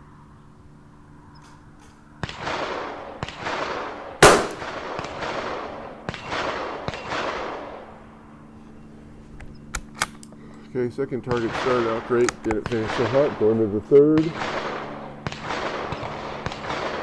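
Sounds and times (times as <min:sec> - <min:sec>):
rifle shot: 0:02.2 - 0:07.9, 0:14.2 - 0:17.0
gun reports: 0:04.2 - 0:05.2, 0:10.6 - 0:16.1.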